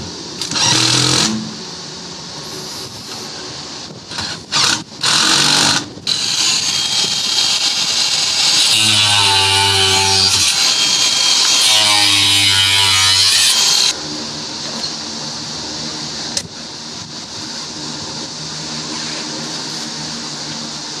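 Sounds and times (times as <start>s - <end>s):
steady machine hum: 0.0s - 21.0s
power tool cutting: 0.4s - 1.6s, 4.1s - 13.9s.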